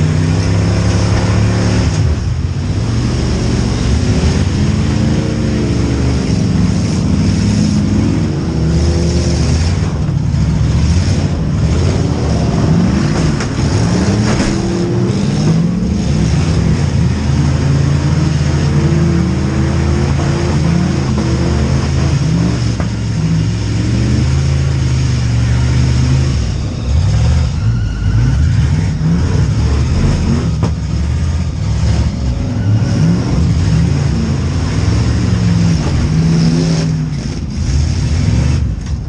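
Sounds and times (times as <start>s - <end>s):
car engines revving: 0.0s - 39.0s.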